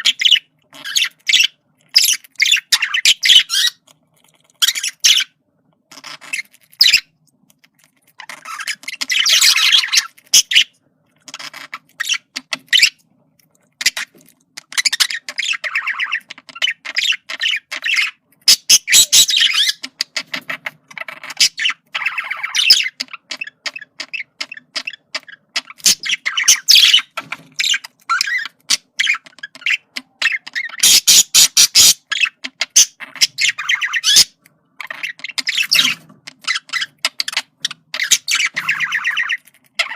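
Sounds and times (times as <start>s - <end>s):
budgerigar chattering: 13.9s - 39.9s.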